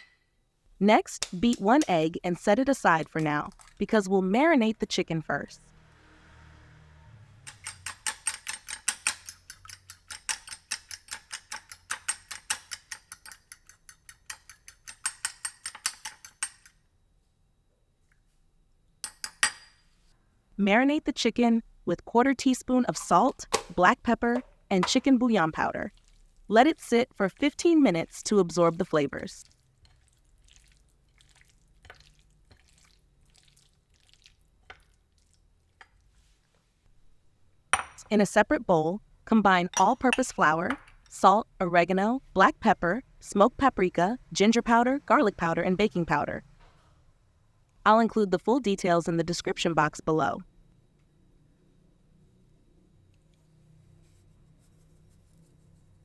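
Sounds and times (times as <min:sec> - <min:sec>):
egg beaten in a bowl: 0:07.5 - 0:16.8.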